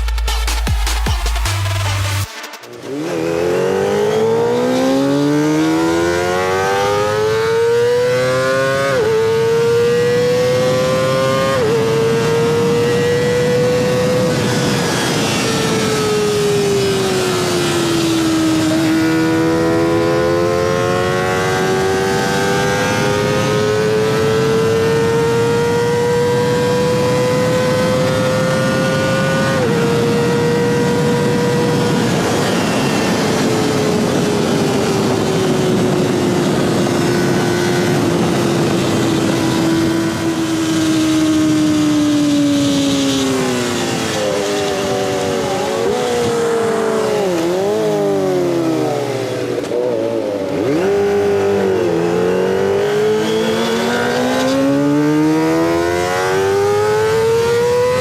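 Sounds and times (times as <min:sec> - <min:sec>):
steady rushing noise: 0:00.0 - 0:05.3
motorcycle engine screaming: 0:02.6 - 0:58.0.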